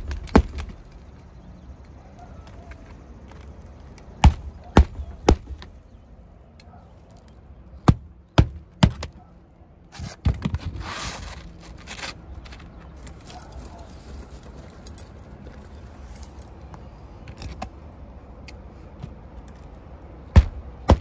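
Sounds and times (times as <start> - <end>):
hammer striking shingle roof: 0.0 - 0.8, 4.2 - 5.7, 7.8 - 9.2, 20.3 - 21.0
scraping and rustling: 9.9 - 16.2.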